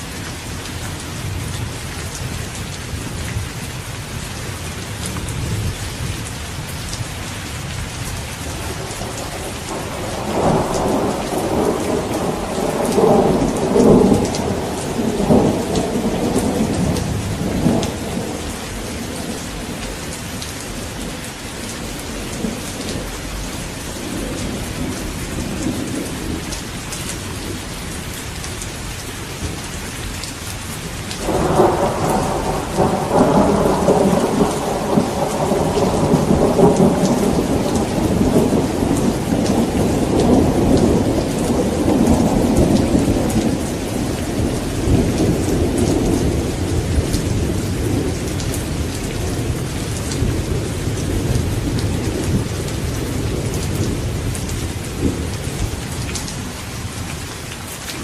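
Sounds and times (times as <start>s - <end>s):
steady rain: 0.0s - 58.0s
thunder rolling: 8.6s - 20.9s, 31.2s - 56.1s.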